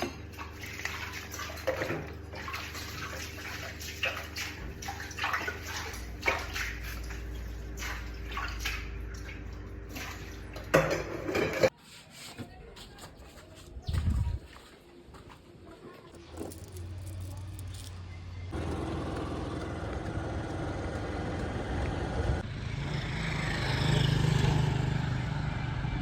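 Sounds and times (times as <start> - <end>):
water running and splashing: 0.0 - 10.8.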